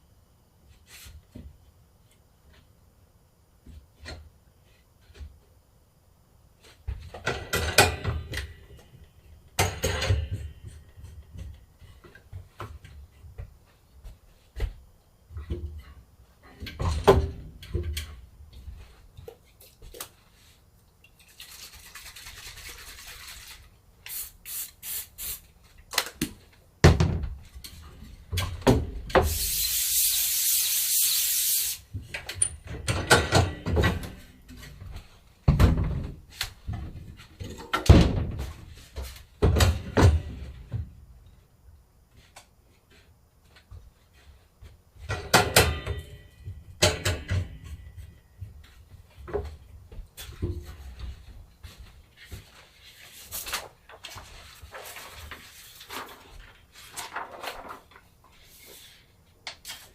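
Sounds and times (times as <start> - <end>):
spray hissing: 24.1 - 25.5, 29.2 - 31.8.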